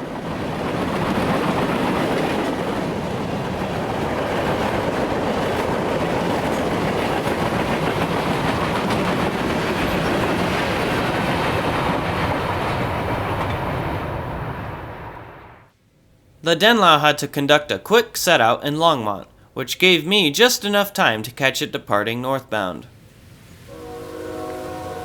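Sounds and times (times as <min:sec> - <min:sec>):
steel wheels clattering on rails: 0:00.0 - 0:14.5
freight train rumbling past: 0:00.0 - 0:15.7, 0:22.8 - 0:25.0.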